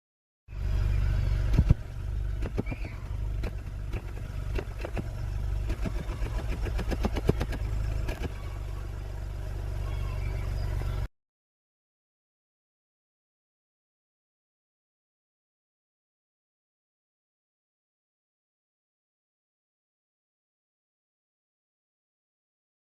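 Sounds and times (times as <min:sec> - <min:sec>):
car engine running with knocks: 0:00.6 - 0:11.1.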